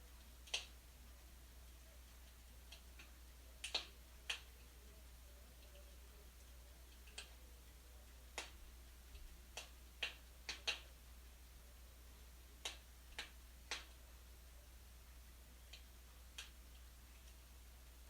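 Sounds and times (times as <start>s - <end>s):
wood fire crackling: 0.0s - 18.0s.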